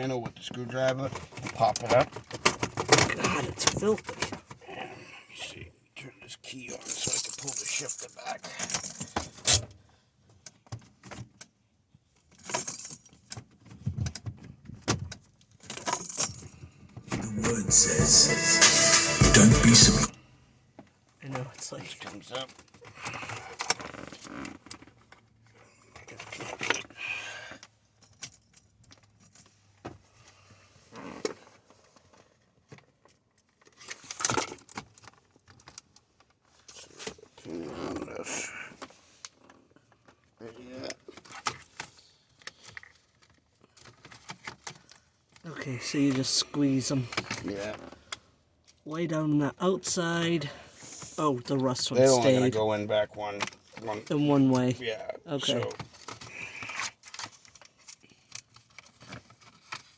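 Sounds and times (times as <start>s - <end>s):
keys jangling: 6.8s - 9.6s, 12.3s - 13.2s.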